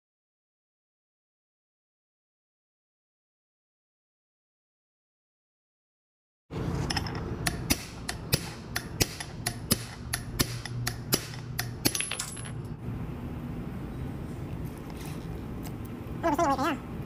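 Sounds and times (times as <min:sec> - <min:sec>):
low steady hum: 0:06.5 - 0:17.0.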